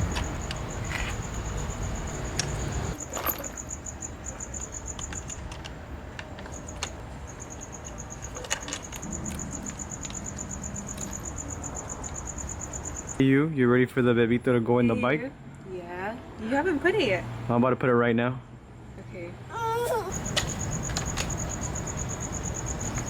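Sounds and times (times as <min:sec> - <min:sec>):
insects trilling: 0:00.0 - 0:13.5, 0:19.6 - 0:23.0.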